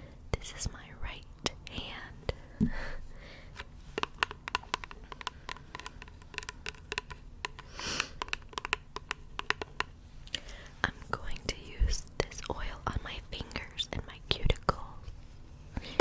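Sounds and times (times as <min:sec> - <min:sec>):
short breathy hiss: 0:07.7 - 0:08.2.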